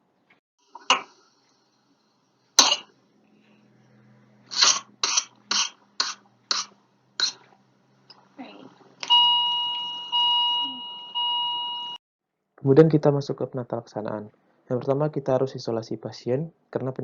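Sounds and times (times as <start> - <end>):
person coughing: 2.6 - 2.9, 4.5 - 7.5.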